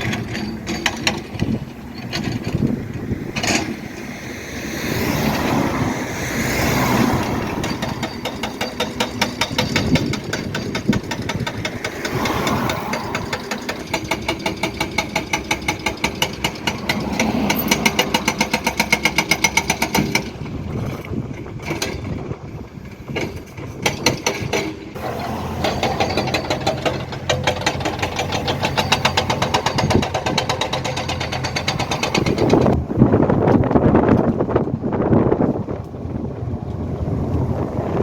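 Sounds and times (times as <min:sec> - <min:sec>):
machine knocking rapidly: 0:07.6 - 0:20.3, 0:23.8 - 0:32.8.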